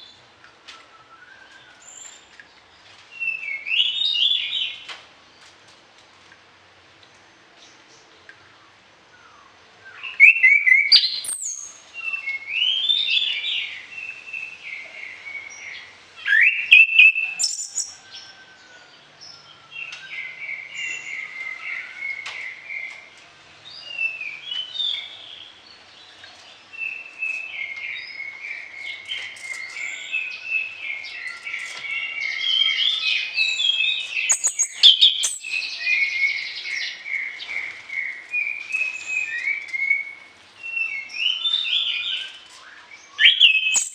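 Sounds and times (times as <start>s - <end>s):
thrush singing whistled phrases: 43.2s - 43.9s.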